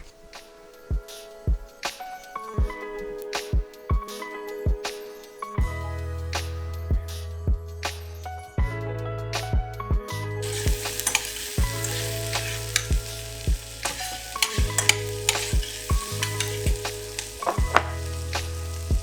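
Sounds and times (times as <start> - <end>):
crackling hiss: 10.4 - 19.0.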